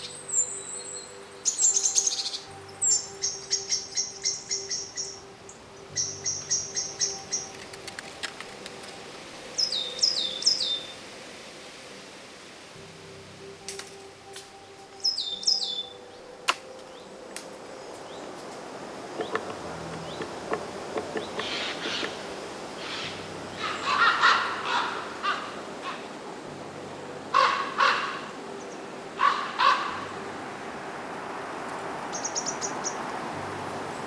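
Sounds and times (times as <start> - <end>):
outdoor background: 0.0 - 34.0
harsh raspy bird calls: 19.2 - 26.2, 27.3 - 28.3, 29.2 - 30.2.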